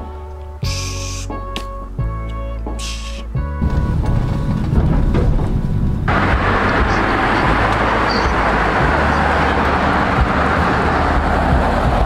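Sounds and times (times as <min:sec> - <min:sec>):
road traffic rushing: 0:02.8 - 0:12.0.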